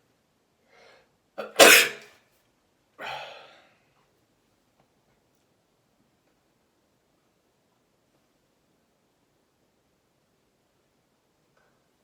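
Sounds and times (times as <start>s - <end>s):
person sneezing: 1.4s - 2.1s.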